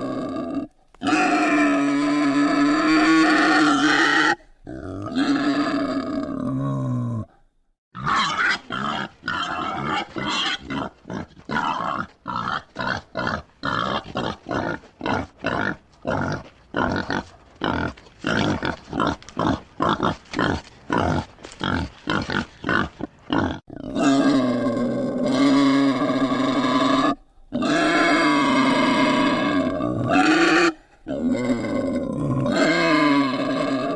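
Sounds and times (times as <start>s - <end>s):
wild boar grunting: 8.0s - 33.9s.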